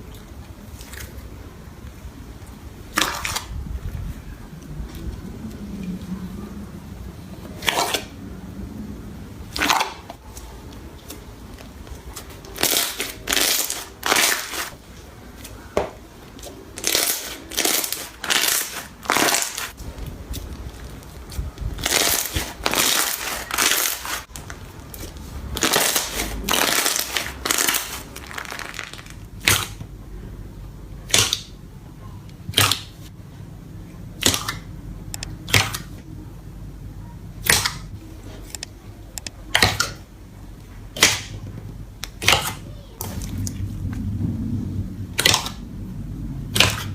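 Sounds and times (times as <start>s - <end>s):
slime squelching: 0.0s - 6.4s, 7.4s - 8.3s, 9.4s - 29.8s, 31.0s - 31.6s, 32.4s - 33.1s, 34.1s - 36.0s, 37.4s - 40.0s, 42.0s - 44.0s, 45.1s - 45.7s, 46.4s - 46.9s
slime popping: 34.2s - 35.9s, 45.1s - 45.6s, 46.5s - 46.9s.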